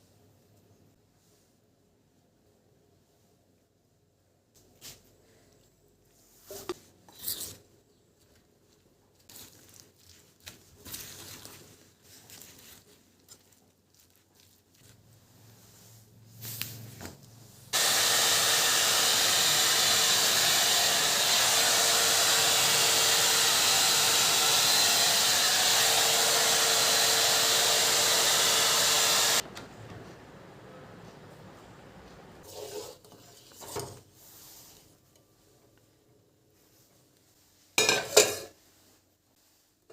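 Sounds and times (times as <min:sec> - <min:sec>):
hair dryer blowing: 0:17.7 - 0:29.4.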